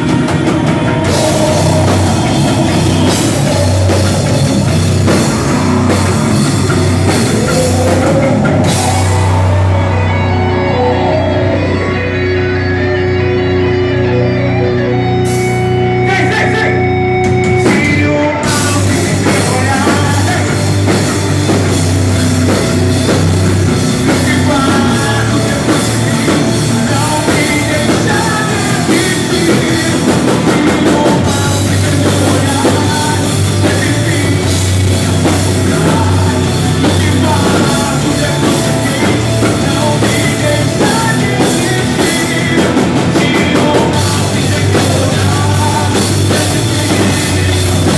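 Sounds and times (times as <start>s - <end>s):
drums: 0.0s - 47.9s
rock band playing: 0.0s - 47.9s.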